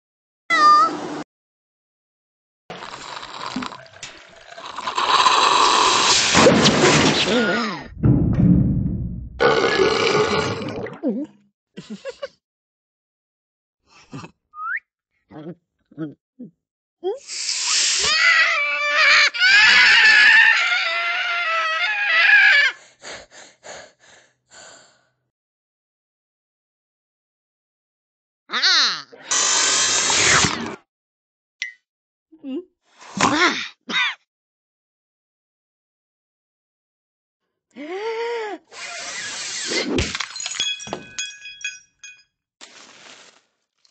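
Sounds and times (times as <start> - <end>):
glass breaking: 40.0 - 42.2
glass pieces clinking: 40.0 - 42.3.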